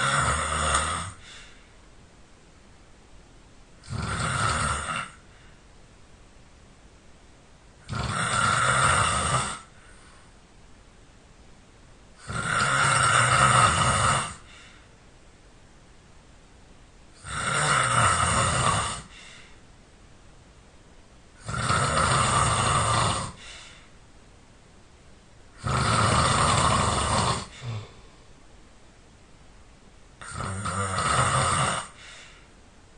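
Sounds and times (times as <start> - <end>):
person snoring loudly: 0.0 - 1.4, 3.8 - 5.2, 7.8 - 9.8, 12.2 - 14.5, 17.2 - 19.3, 21.4 - 23.6, 25.6 - 28.1, 30.2 - 32.2
quiet breathing: 0.0 - 2.0, 3.8 - 5.9, 8.1 - 10.5, 12.2 - 15.1, 18.2 - 19.8, 21.3 - 24.1, 25.5 - 28.5, 30.2 - 32.7.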